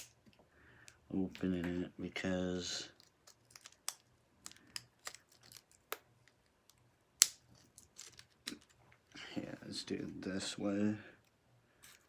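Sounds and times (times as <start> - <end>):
plastic packaging clicking and snapping: 0.0 - 1.7, 2.9 - 8.8.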